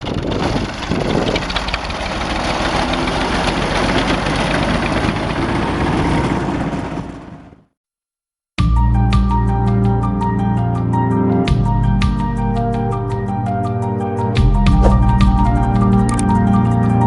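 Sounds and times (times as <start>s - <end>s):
tractor engine running: 0.0s - 7.6s, 14.8s - 16.4s.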